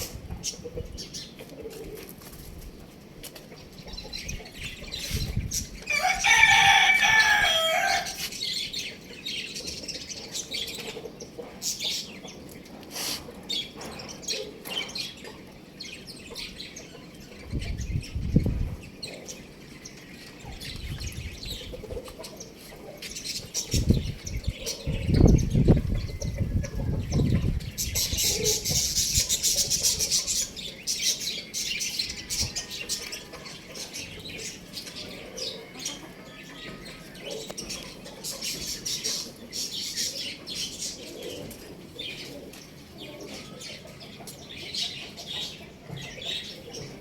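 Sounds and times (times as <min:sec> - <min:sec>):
rooster crowing: 0:05.9 - 0:08.2.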